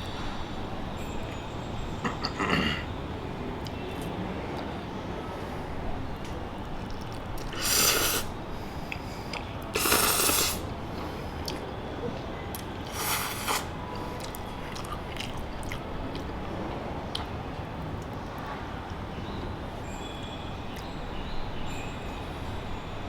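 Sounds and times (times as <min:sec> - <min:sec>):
soft chewing: 0:06.2 - 0:16.4, 0:17.1 - 0:17.4
wet mouth clicks: 0:06.9 - 0:08.3, 0:08.9 - 0:10.6, 0:12.5 - 0:16.3
person slurping noodles: 0:07.4 - 0:08.4, 0:09.7 - 0:10.7, 0:12.8 - 0:13.7.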